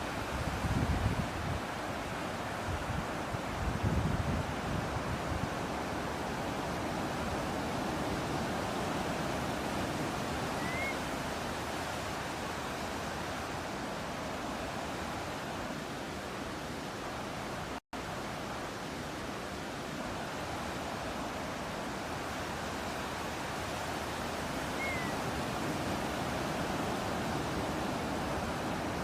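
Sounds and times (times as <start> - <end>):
ocean surf: 0.0 - 29.0
rising bird chirp: 10.6 - 11.1, 24.7 - 25.2.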